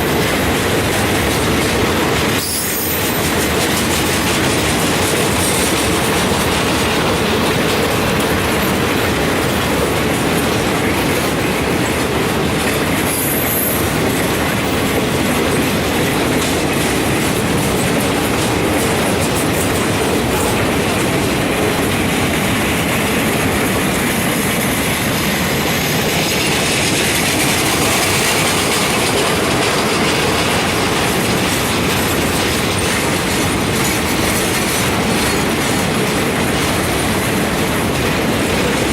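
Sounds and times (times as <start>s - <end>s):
train wheel squeal: 0.0s - 9.0s, 9.8s - 21.1s, 23.2s - 38.9s
freight train wheels clattering: 0.0s - 38.9s.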